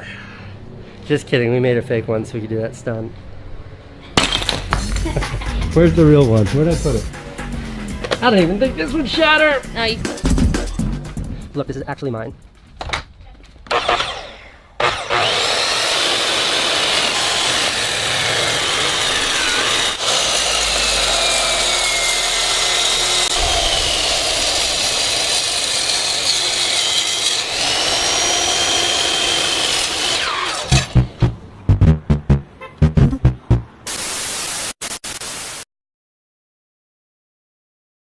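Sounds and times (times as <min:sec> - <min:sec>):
power tool grinding: 0:13.7 - 0:31.1.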